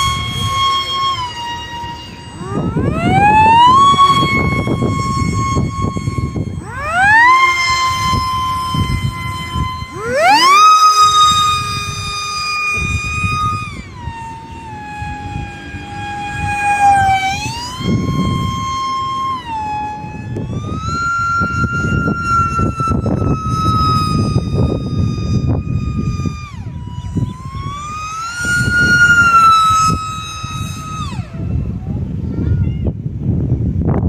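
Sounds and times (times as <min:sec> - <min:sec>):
model plane motor whining: 0:00.0 - 0:34.0
rumbling wind noise: 0:00.0 - 0:34.0.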